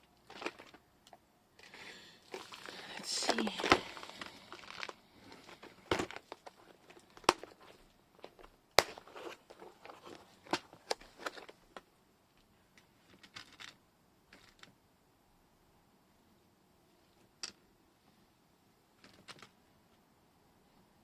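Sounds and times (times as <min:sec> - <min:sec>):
rustling through beads: 0:00.1 - 0:00.9, 0:01.6 - 0:11.8.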